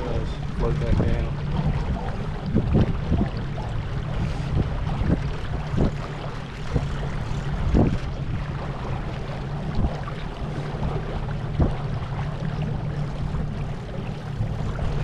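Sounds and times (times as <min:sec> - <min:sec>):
rushing water: 0:00.0 - 0:15.0
wind: 0:00.0 - 0:15.0.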